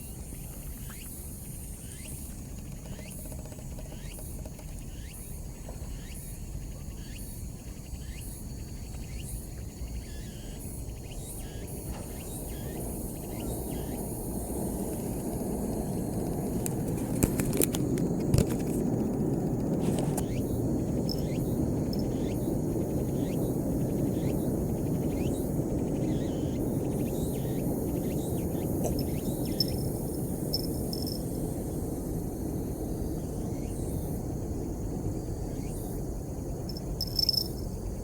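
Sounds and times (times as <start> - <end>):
steady low rumble: 17.8 - 38.0
faint high chirps: 28.8 - 31.3.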